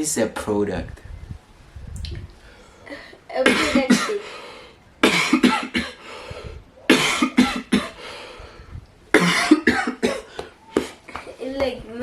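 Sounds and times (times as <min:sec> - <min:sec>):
person coughing: 0:02.9 - 0:04.2, 0:05.0 - 0:06.0, 0:06.9 - 0:08.0, 0:09.1 - 0:11.0.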